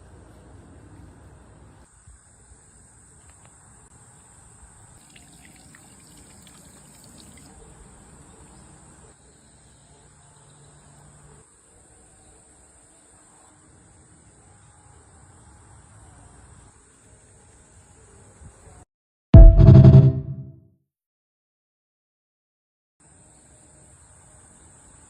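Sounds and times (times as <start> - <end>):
crickets chirping: 1.8 - 16.2.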